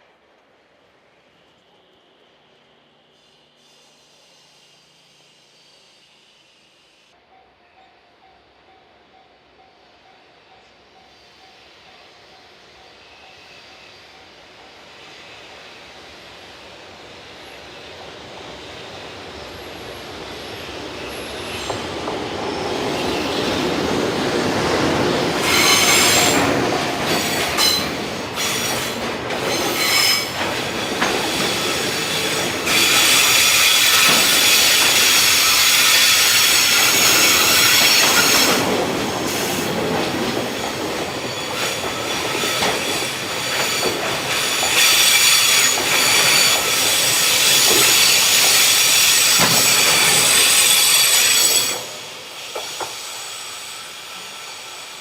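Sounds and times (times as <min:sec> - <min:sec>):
freight train passing: 0:00.0 - 0:55.0
wheels squealing on rails: 0:01.0 - 0:08.0, 0:09.6 - 0:55.0
train clickety-clack: 0:17.4 - 0:53.5.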